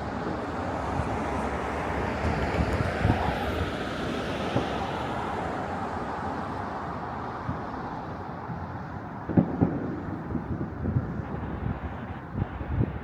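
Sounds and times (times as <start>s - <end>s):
wind on microphone: 9.6s - 13.0s.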